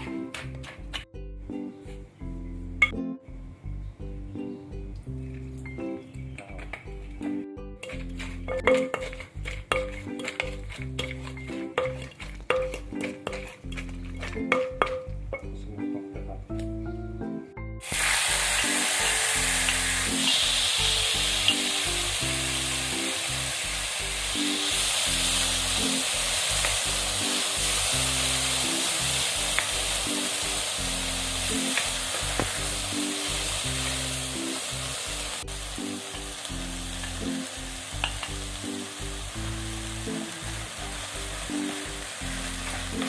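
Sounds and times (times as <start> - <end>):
food sizzling in a pan: 17.8 - 43.0.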